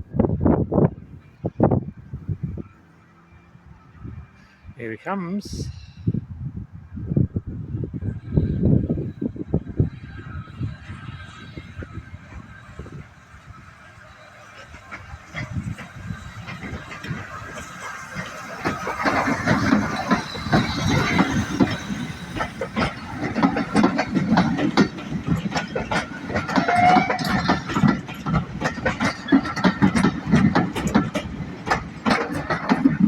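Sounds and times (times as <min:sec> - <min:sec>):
steam locomotive wheels clanking: 0:08.2 - 0:33.0
wheel squeal: 0:10.1 - 0:31.1.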